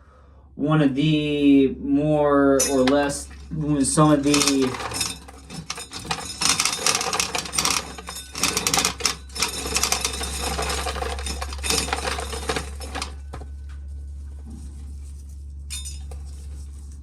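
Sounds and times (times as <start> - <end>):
steady low hum: 0.8 - 17.0
corn kernels clattering: 2.6 - 13.5.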